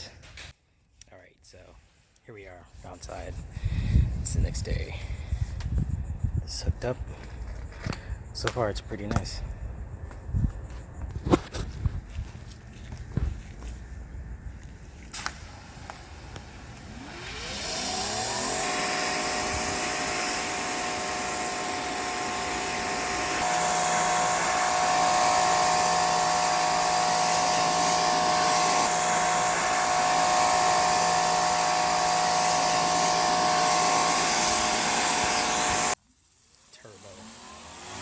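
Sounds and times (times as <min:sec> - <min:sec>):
electric pressure washer running: 0:15.2 - 0:38.0.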